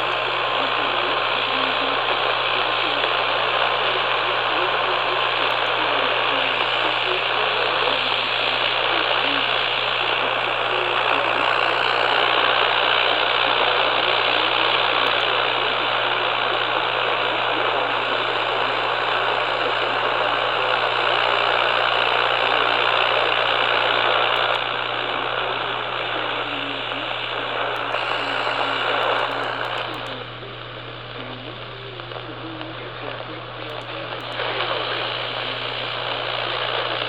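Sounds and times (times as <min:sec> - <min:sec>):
radio static hiss: 0:00.0 - 0:37.0
crackling clicks: 0:05.2 - 0:15.4, 0:21.4 - 0:24.8, 0:26.8 - 0:37.0.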